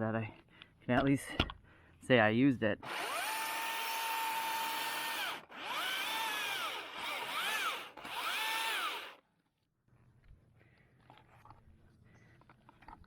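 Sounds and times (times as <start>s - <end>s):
battery chainsaw motor whine: 2.8s - 9.2s.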